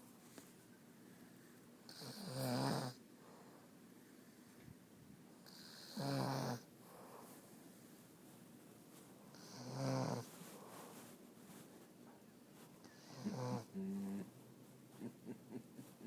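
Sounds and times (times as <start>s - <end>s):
woman snoring: 1.9s - 3.0s, 5.5s - 6.6s, 13.0s - 14.3s.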